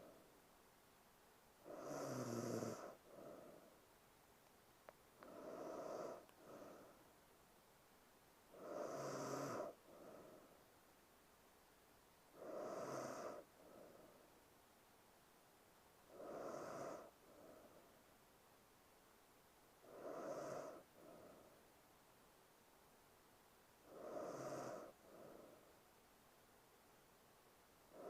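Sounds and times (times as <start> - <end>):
woman breathing with light snoring: 1.6 - 3.9, 5.2 - 7.1, 8.5 - 10.7, 12.3 - 14.4, 16.0 - 18.1, 19.8 - 21.7, 23.8 - 25.9.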